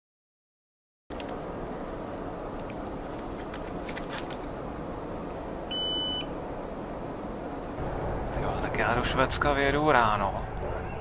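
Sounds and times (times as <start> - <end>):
steady background noise: 1.1 - 11.0
high electronic beep: 5.7 - 6.3.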